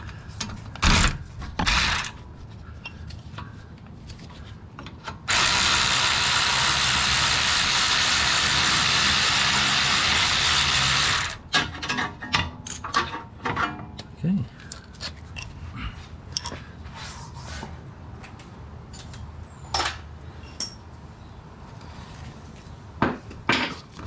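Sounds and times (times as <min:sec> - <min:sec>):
handheld power tool running: 0:05.3 - 0:11.4.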